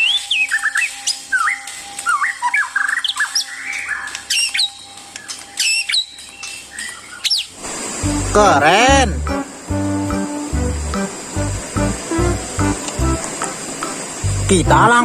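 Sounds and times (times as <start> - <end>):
faint steady hum: 7.6 - 15.0.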